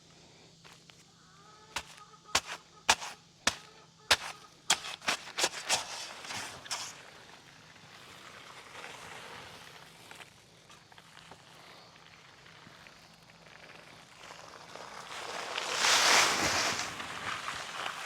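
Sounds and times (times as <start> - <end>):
sharp knocks and slaps: 1.8 - 6.9
concrete mix pouring from bag: 4.1 - 7.0.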